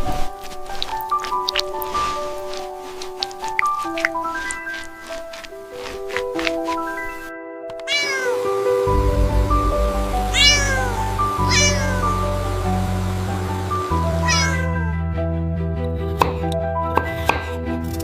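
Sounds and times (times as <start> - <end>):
light background music: 0.0 - 18.0
cat meowing: 7.8 - 8.5, 10.3 - 12.4, 14.1 - 15.0.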